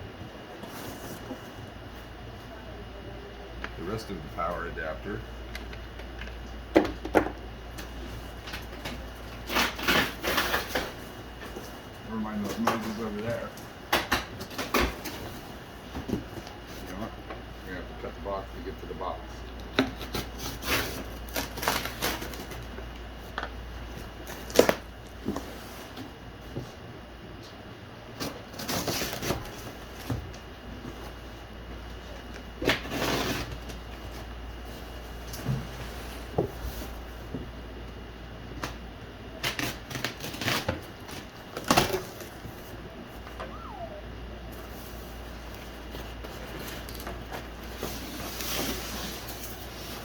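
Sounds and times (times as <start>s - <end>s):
cardboard packaging rustling: 20.0s - 22.8s.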